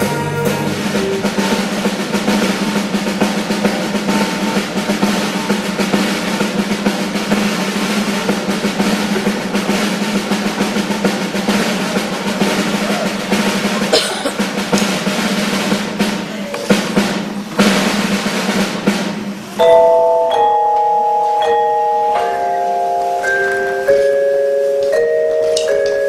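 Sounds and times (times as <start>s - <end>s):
snare drum roll: 0.0s - 19.6s.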